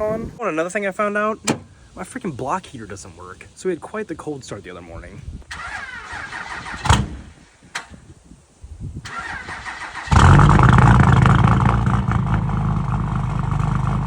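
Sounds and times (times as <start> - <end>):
diesel truck engine starting: 5.5 - 7.3, 9.0 - 14.0.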